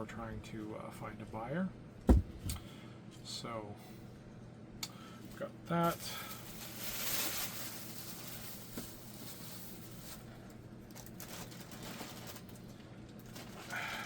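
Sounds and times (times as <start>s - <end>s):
plastic toy pieces rustling: 6.4s - 10.2s.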